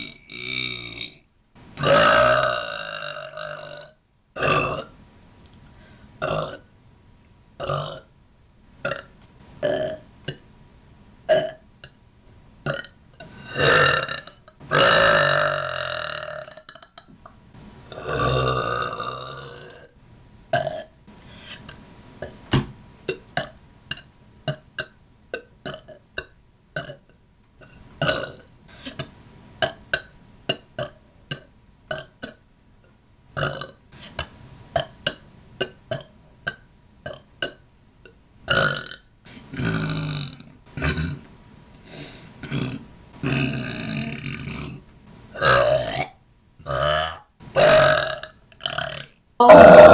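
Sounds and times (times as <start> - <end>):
women burping: 42.4 - 44.2, 48.9 - 49.9.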